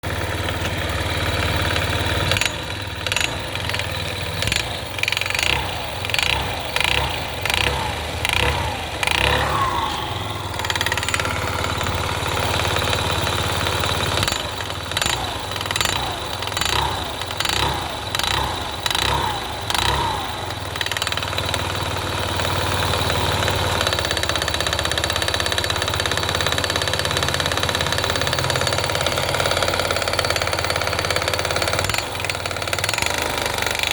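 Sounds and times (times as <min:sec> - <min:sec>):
scooter engine idling and revving: 0:00.0 - 0:33.9.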